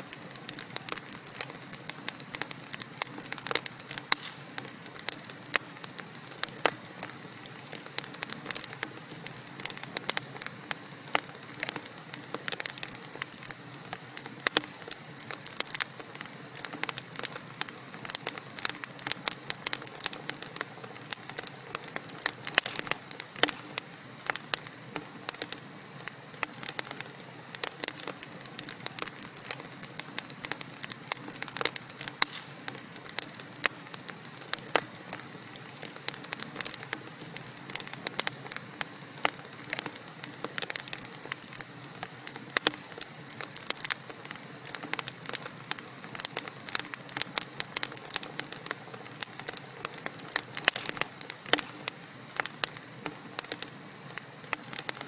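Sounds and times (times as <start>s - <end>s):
wood fire crackling and popping: 0.0s - 55.0s.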